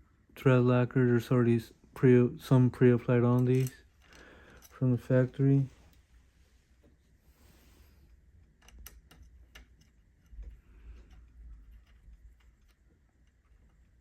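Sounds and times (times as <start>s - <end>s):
clicks of metal parts and tools: 3.3s - 4.8s.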